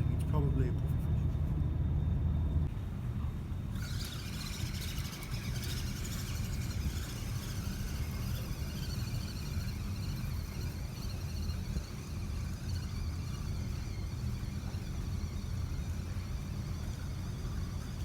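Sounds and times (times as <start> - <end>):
wind rumbling on microphone: 0.9 - 18.0.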